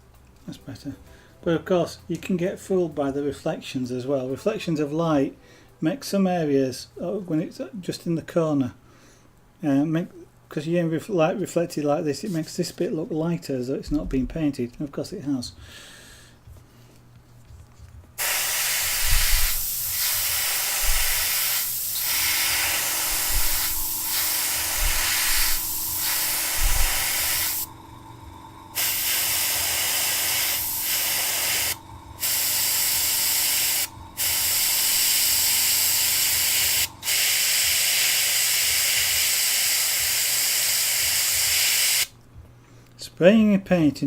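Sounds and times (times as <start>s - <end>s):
airbrush spraying hiss: 18.2s - 42.1s.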